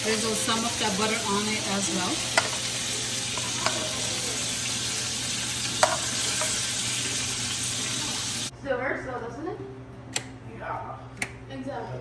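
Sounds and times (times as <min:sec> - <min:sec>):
butter sizzling in frying pan: 0:00.0 - 0:08.5.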